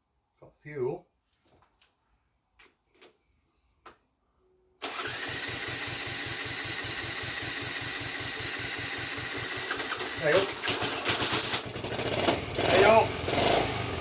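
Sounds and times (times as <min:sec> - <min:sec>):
small motorcycle engine running: 0:04.9 - 0:14.0.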